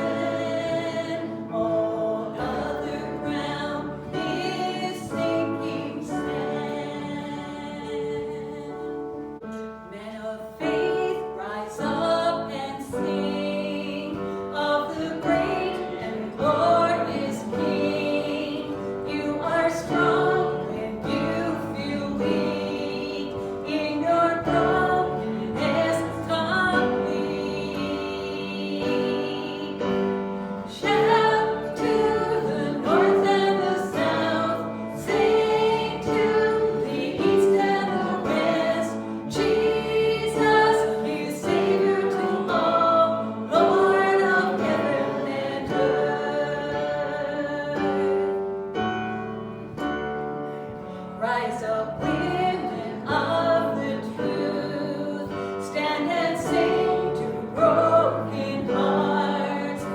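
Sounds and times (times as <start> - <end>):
voices singing together: 0.0 - 49.8, 50.5 - 59.9.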